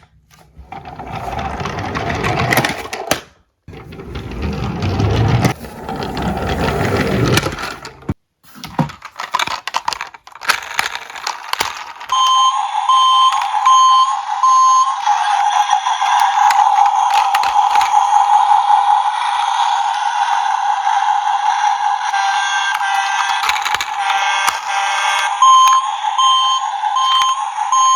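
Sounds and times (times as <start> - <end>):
toy cars rolling and rattling: 0.2 - 27.9
toy clicks and clatter: 8.7 - 26.1
toy electronic siren beeping: 9.2 - 27.9.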